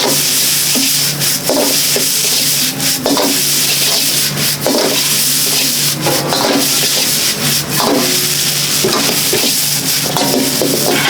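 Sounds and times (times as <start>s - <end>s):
rice sizzling in a wok: 0.0s - 11.0s
metal ladle scraping a pan: 0.7s - 11.0s.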